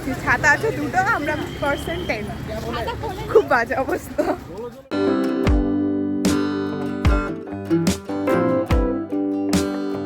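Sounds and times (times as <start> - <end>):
strummed acoustic guitar: 4.9 - 10.0.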